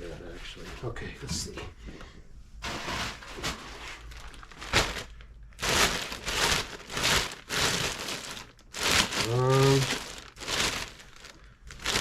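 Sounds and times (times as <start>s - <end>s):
crinkly material rustling: 2.6s - 12.0s.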